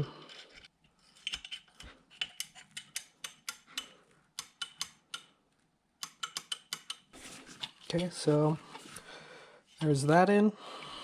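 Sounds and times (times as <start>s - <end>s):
small sharp metal clicks: 1.2s - 5.4s, 6.0s - 8.1s.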